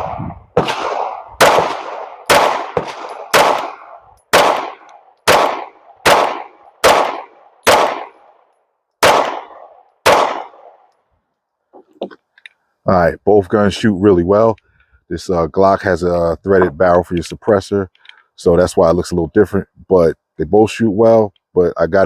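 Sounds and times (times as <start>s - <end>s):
pistol shots: 0.0s - 8.4s, 9.0s - 10.9s.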